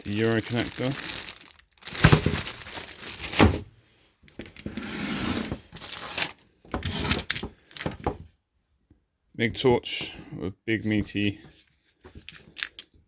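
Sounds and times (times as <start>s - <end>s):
plastic wrap rustling: 0.0s - 3.7s, 5.8s - 6.3s.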